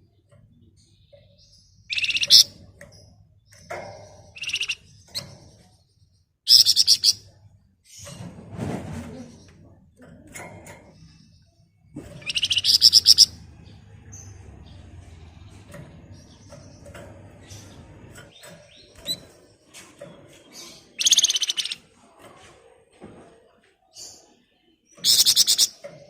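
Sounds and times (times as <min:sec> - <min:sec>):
soft bird chirps: 0:00.0 - 0:08.3, 0:09.0 - 0:22.8, 0:23.5 - 0:26.0
songbird buzzy rattling trill: 0:00.9 - 0:05.6, 0:06.5 - 0:07.3, 0:12.1 - 0:21.9, 0:25.0 - 0:26.0.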